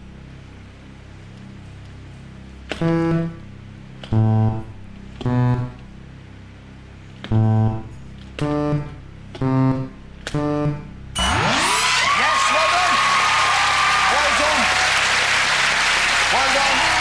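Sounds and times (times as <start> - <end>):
deep pitched electronic notes: 2.7 - 6.0, 7.3 - 12.2.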